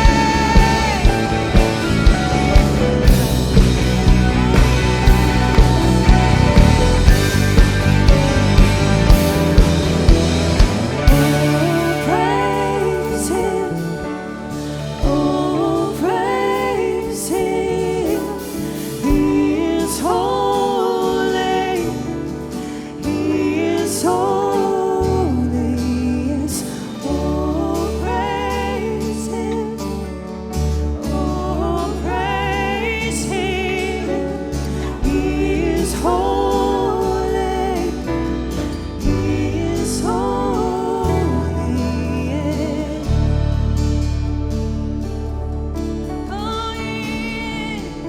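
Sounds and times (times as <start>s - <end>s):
sharp drum beats: 0.0s - 12.5s
worship band music: 0.0s - 48.0s.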